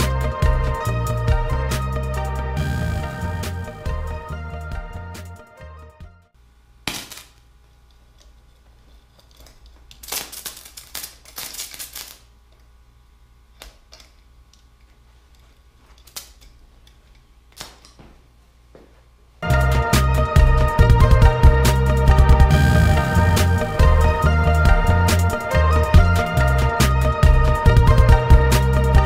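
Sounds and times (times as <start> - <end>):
welding arc crackling: 6.8 - 7.6, 9.9 - 12.3.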